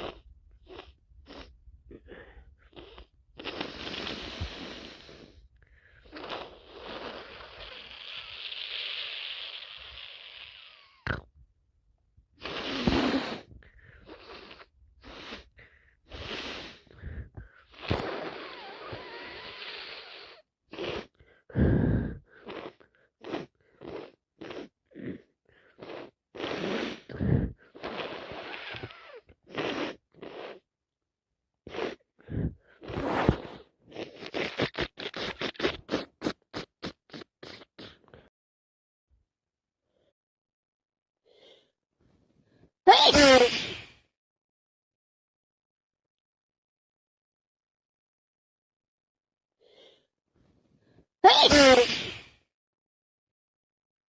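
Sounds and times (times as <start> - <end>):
person sniffing: 0.0 - 11.0, 12.4 - 30.6, 31.7 - 38.3, 42.9 - 43.9, 51.2 - 52.4
wet nose-blowing: 0.0 - 11.2, 12.4 - 30.7, 31.7 - 38.3, 42.9 - 43.9, 51.2 - 52.4
person sneezing: 12.4 - 13.5, 42.9 - 43.9, 51.2 - 52.3.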